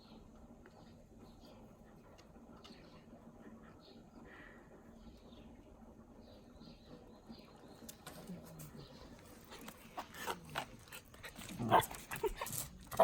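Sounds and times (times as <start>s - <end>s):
dogs play growling: 9.4s - 13.0s.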